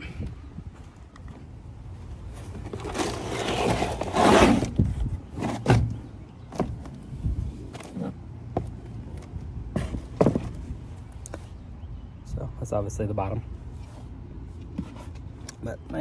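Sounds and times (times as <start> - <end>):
scraping rustle: 0.8 - 6.0.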